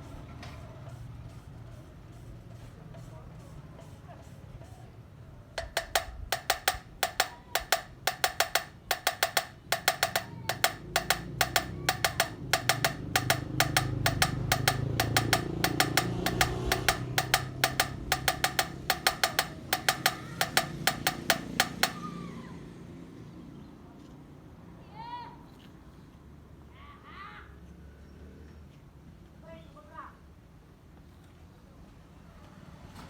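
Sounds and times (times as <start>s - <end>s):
hammer blows on metal: 5.6s - 22.1s.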